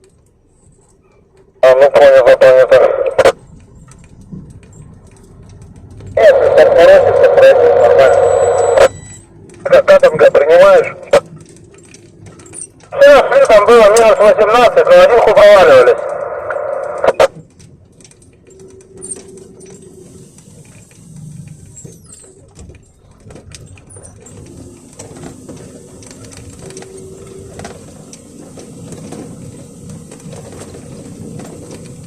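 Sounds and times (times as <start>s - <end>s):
truck engine rumble: 0.0s - 32.0s
truck cab creaking and squeaking: 3.4s - 14.5s, 15.4s - 32.0s.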